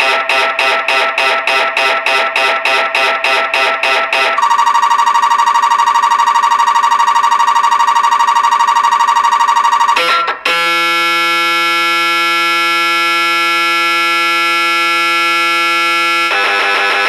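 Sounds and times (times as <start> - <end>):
mri scanner rapid beeping: 0.0 - 10.3
mri scanner loud buzz: 0.0 - 17.0.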